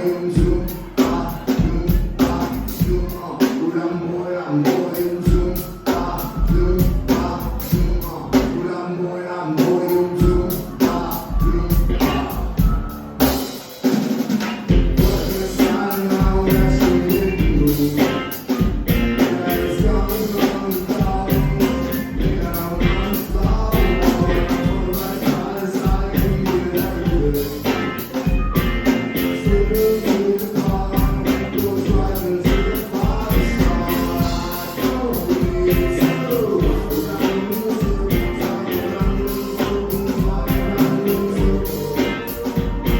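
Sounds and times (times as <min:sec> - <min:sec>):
drums: 0:00.0 - 0:08.8, 0:09.6 - 0:42.9
live rock band: 0:00.0 - 0:08.9, 0:09.5 - 0:42.9
person singing: 0:00.0 - 0:13.8, 0:14.6 - 0:42.9.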